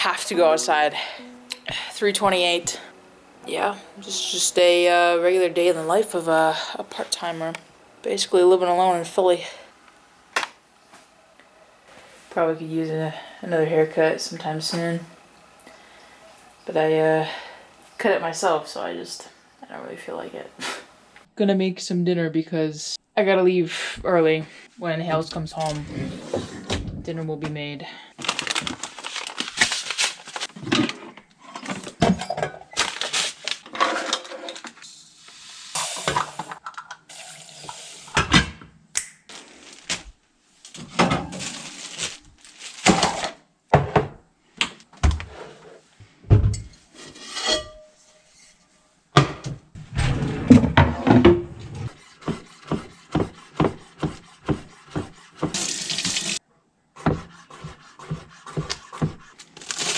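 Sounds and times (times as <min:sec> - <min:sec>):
dishes and pans clattering: 0:46.4 - 0:48.0
running water: 0:55.5 - 0:56.4.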